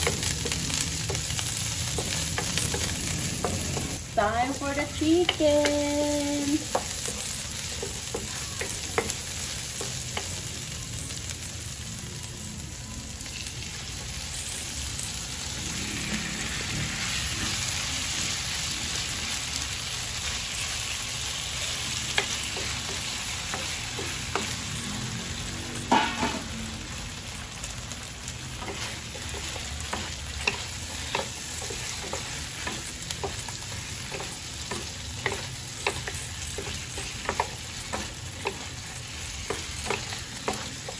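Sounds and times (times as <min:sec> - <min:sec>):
chicken sizzling in oil: 0:00.0 - 0:40.9.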